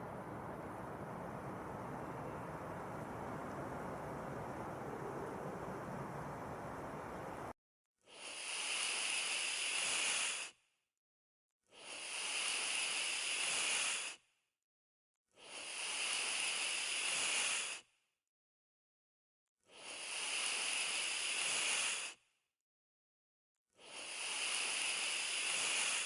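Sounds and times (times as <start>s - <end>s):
animal hissing: 0.0s - 7.5s.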